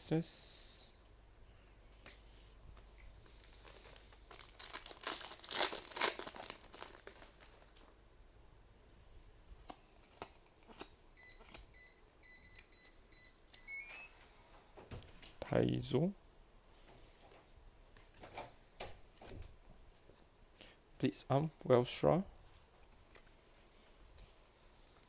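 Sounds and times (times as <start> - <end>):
foil pack crinkling and tearing: 3.2 - 7.9.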